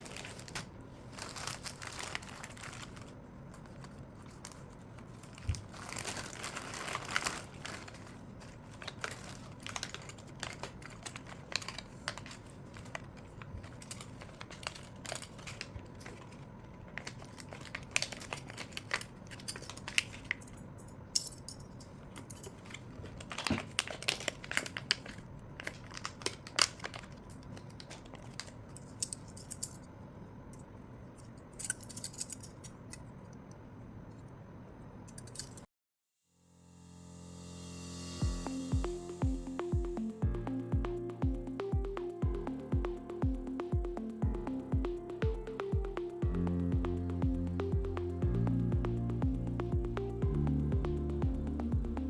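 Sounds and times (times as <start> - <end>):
plastic packaging crinkling: 0.0 - 20.4, 22.5 - 29.0.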